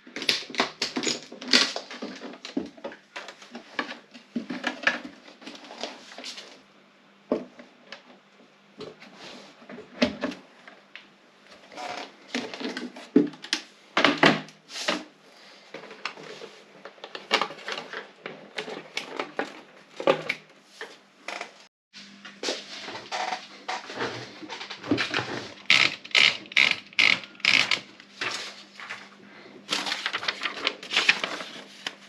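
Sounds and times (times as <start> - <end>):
typewriter keystrokes: 25.7 - 27.9.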